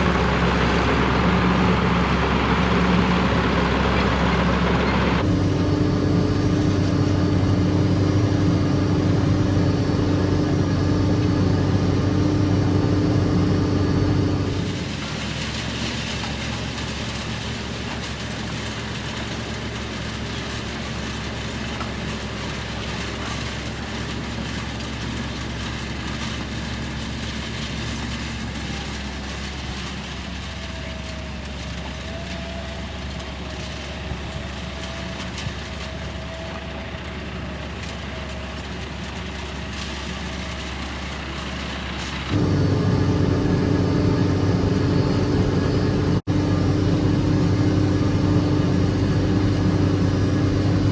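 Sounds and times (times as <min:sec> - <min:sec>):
loud deep engine close by: 0:00.0 - 0:50.9
tractor engine running: 0:00.0 - 0:50.9.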